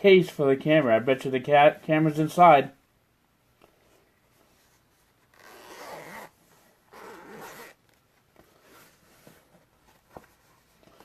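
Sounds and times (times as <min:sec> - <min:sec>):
zipper being pulled open: 0:05.2 - 0:07.9.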